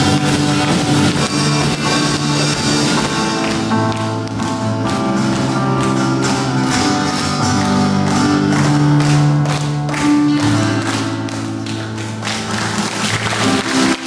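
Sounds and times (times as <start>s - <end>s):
worship band music: 0.0s - 14.0s.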